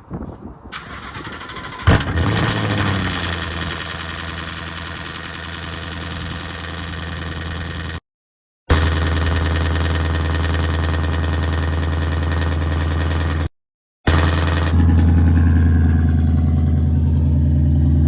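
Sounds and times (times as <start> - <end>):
car engine cold start bang: 0.7 - 4.2
loud car engine idling: 1.9 - 8.0, 8.7 - 13.5, 14.1 - 18.0.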